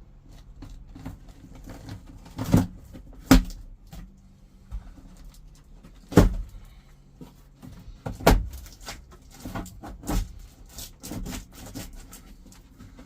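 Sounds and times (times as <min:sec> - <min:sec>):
sharp plastic knocks: 0:00.6 - 0:04.1, 0:05.8 - 0:06.6, 0:07.6 - 0:12.0.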